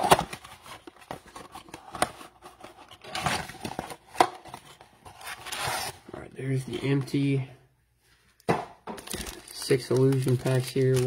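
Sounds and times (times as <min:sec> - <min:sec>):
foil packs crinkling: 0:09.0 - 0:11.0.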